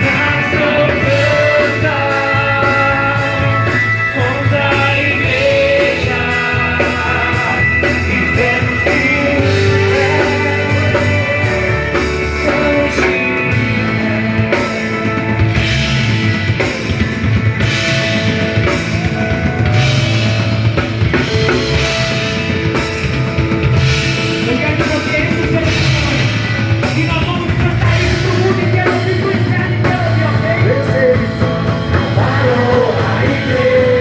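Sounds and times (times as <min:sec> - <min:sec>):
person singing: 0:00.0 - 0:15.5, 0:24.3 - 0:34.0
live rock band playing: 0:00.0 - 0:34.0.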